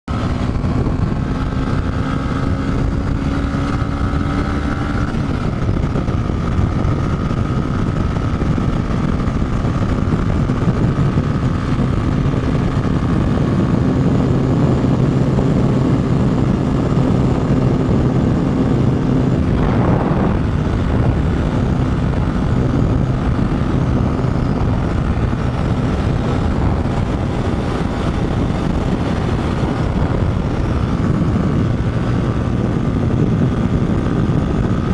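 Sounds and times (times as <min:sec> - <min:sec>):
motorcycle engine running: 0:00.0 - 0:34.9
rushing noise: 0:19.0 - 0:32.6.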